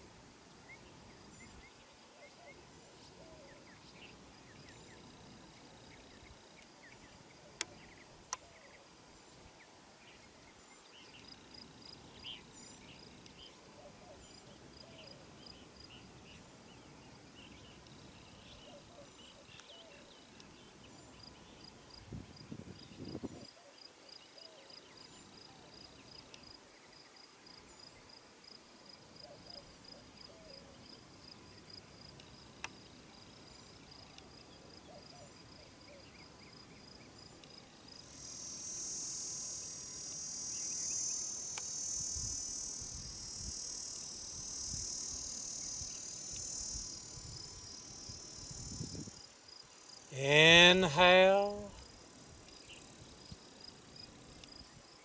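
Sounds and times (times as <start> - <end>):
insect chirping: 0.5 - 55.0
faint bird calls: 17.4 - 20.7.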